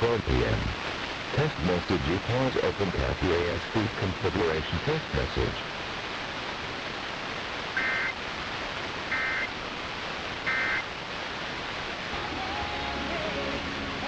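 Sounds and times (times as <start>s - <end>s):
radio hiss: 0.0s - 14.0s
digital data chirps: 7.8s - 8.2s, 10.5s - 10.8s.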